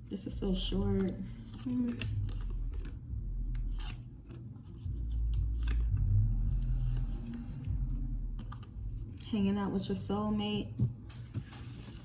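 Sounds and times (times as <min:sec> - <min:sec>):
cards rustling and clicking: 0:00.6 - 0:09.2
low rumble: 0:04.9 - 0:09.2.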